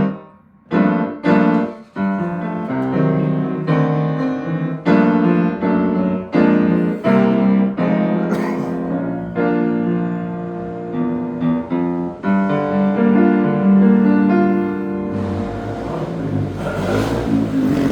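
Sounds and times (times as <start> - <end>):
piano chords: 0.0 - 17.9
broad rushing noise: 8.8 - 17.9.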